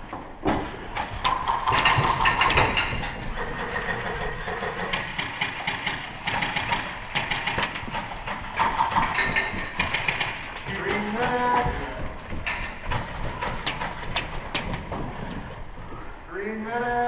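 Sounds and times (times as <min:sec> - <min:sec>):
airsoft guns firing: 0:01.3 - 0:12.0.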